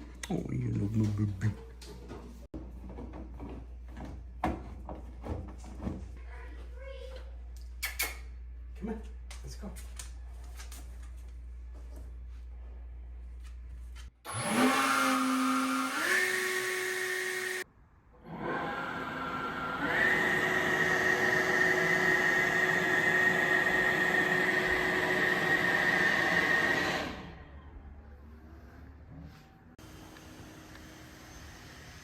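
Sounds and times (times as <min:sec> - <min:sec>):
leaf blower motor whine: 0:14.3 - 0:17.6, 0:18.3 - 0:27.3.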